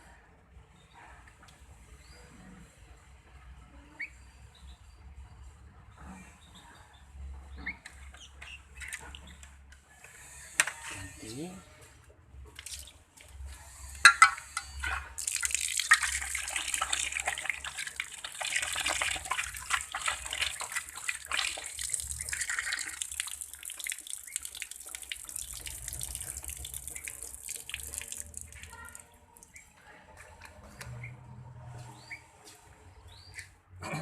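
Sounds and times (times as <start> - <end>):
water running and splashing: 15.1 - 29.6.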